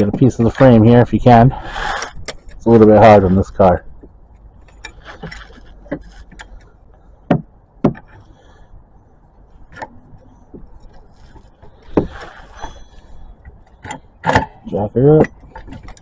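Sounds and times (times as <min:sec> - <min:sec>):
car jack knocks and clanks: 0:13.7 - 0:16.0.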